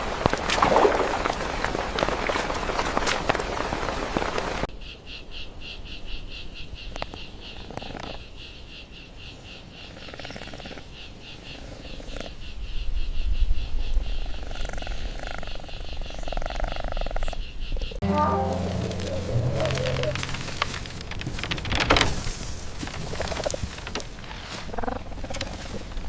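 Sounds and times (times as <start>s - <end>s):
loud rush of noise: 18.0s - 21.5s
low rumble: 18.0s - 22.8s.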